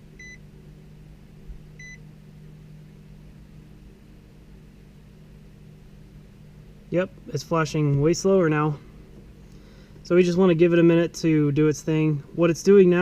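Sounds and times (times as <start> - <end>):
low electrical hum: 0.0 - 13.0
car warning chime beep: 0.2 - 0.4, 1.8 - 2.0.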